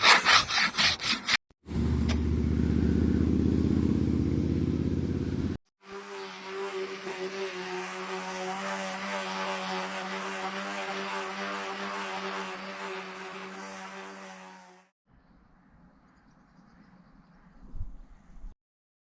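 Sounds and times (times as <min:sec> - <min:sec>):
motor running with low rumble: 0:01.7 - 0:05.6.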